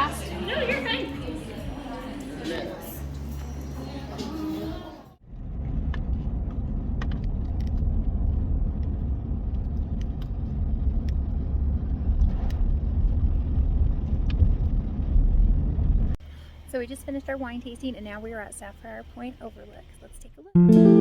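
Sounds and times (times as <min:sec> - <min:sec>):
road and engine rumble: 0:05.2 - 0:20.4.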